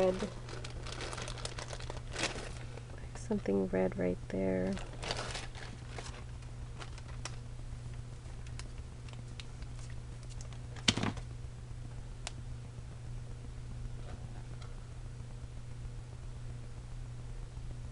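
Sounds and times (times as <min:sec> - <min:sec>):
paper and small items handled: 0:00.0 - 0:03.6, 0:04.6 - 0:07.4, 0:08.4 - 0:11.2
low steady hum: 0:00.0 - 0:17.9.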